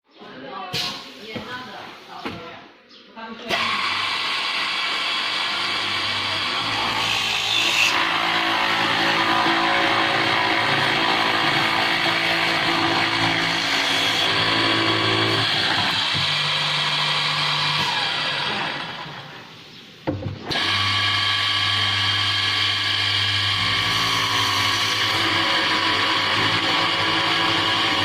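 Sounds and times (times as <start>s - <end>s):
electric motor whirring: 3.5s - 19.2s.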